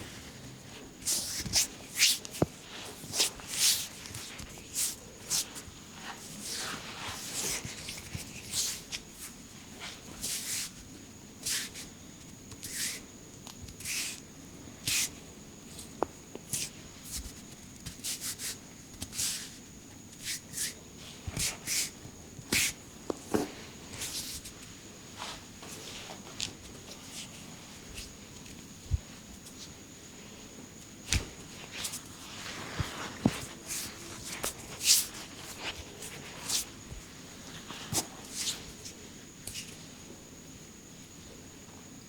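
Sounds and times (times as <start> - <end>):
hands rubbing over skin and clothing: 0.2 - 10.8, 15.8 - 19.6, 20.2 - 22.8, 23.6 - 29.8, 31.1 - 39.8.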